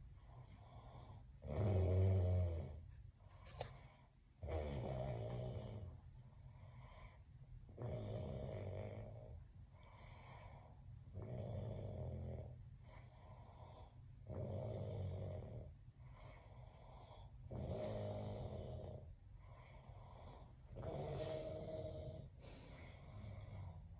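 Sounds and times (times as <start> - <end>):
quiet breathing: 0.0 - 23.9
man snoring: 0.9 - 2.8, 4.4 - 5.9, 7.8 - 9.3, 11.2 - 12.5, 13.6 - 15.7, 17.0 - 19.0, 20.3 - 23.9.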